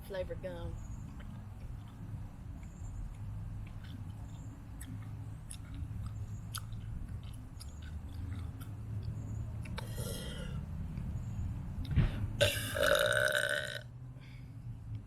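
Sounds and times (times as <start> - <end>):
low steady rumble: 0.0 - 15.0
gum chewing mouth clicks: 2.6 - 10.2.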